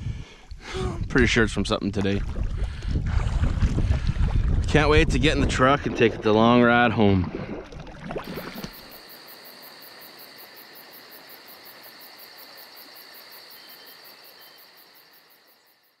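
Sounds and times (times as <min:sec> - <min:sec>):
insects chirping: 0:08.2 - 0:16.0.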